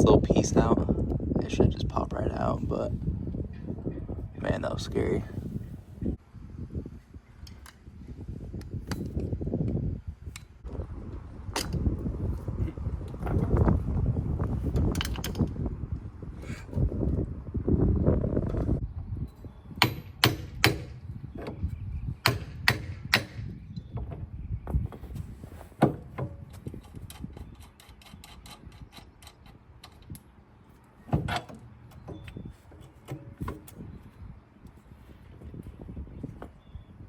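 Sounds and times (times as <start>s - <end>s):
sharp metal knocks: 19.8s - 21.6s, 22.2s - 24.2s.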